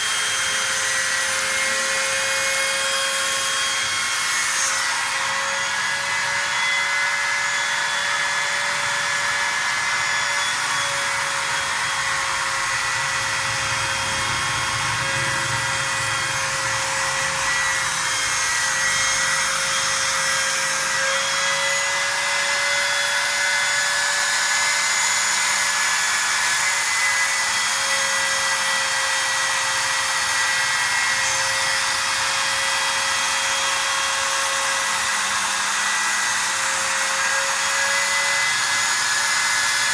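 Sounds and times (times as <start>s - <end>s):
motor whine: 9.7s - 20.2s.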